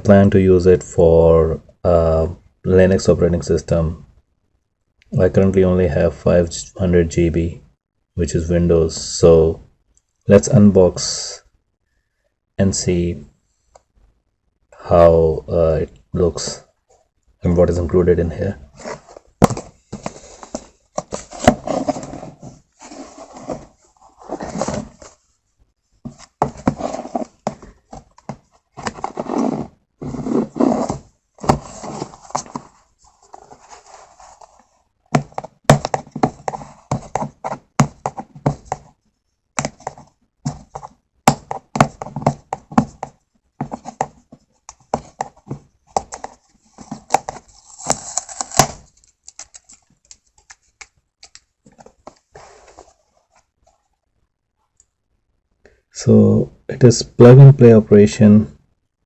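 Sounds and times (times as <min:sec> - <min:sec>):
packaging rustling and crinkling: 0:46.1 - 0:50.7.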